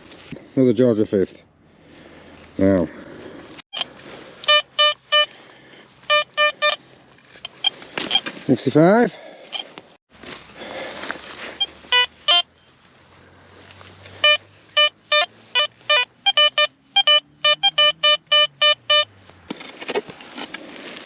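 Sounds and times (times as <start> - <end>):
metal detector beeps: 3.7 - 5.3, 6.1 - 6.8, 7.4 - 8.3, 11.6 - 12.7, 14.2 - 19.1.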